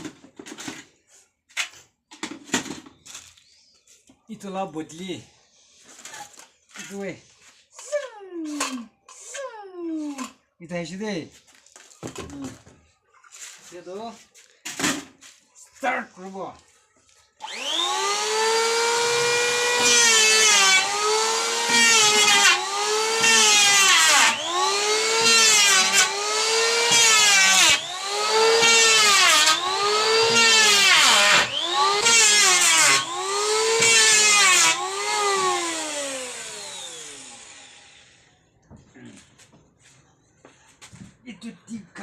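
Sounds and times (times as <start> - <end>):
power drill motor whine: 17.4 - 38.2.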